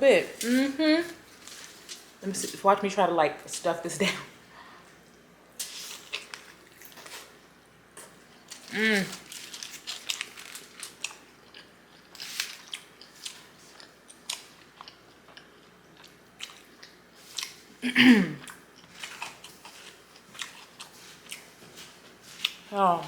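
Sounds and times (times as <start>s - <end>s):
biting and chewing crunching: 8.4s - 17.6s, 18.5s - 22.6s.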